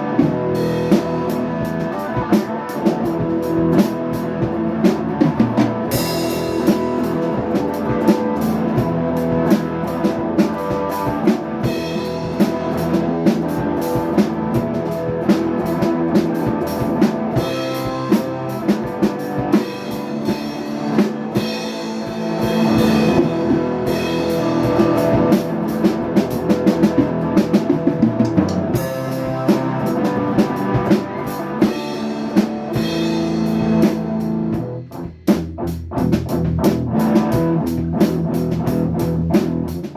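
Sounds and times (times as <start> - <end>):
rock music on drums and guitar: 0.0 - 39.9.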